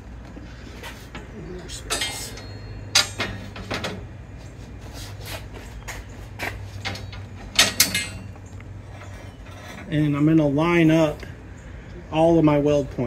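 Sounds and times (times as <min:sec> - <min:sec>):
low steady hum: 0:00.0 - 0:13.0
steel poles knocking on metal table: 0:01.9 - 0:04.0, 0:06.8 - 0:08.4.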